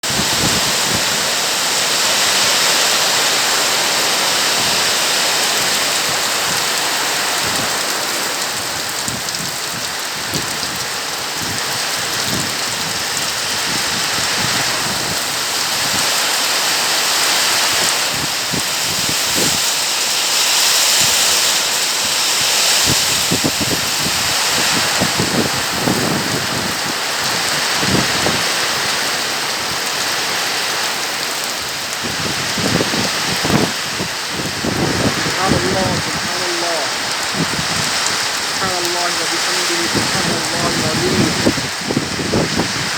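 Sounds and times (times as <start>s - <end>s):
heavy rain pouring: 0.0s - 42.9s.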